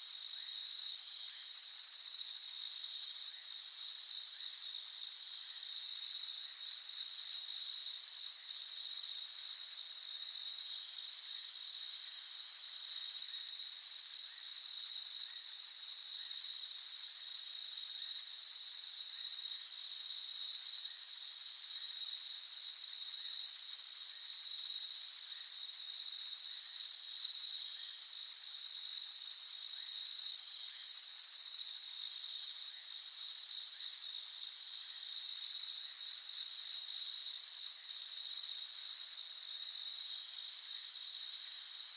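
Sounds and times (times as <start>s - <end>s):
crickets chirping: 0.0s - 41.9s.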